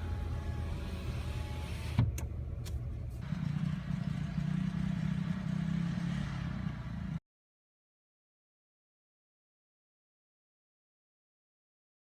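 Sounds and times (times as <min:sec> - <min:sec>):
car engine and road noise: 0:00.0 - 0:07.2.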